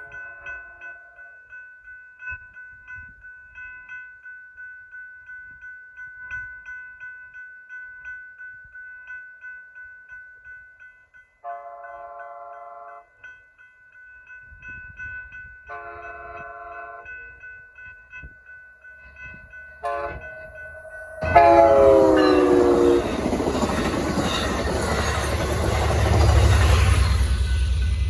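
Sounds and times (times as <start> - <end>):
railroad crossing bells ringing: 0.0 - 28.0
train wheels rumbling on rail: 19.2 - 28.0
train horn blasts: 19.8 - 23.6.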